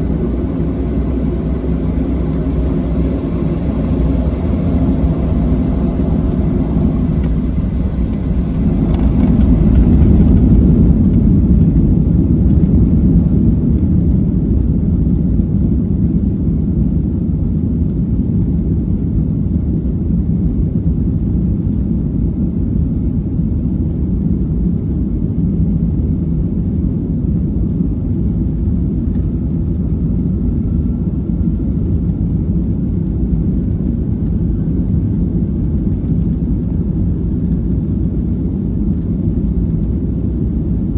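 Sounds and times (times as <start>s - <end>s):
airplane cabin engine rumble: 0.0s - 25.4s, 26.2s - 40.9s.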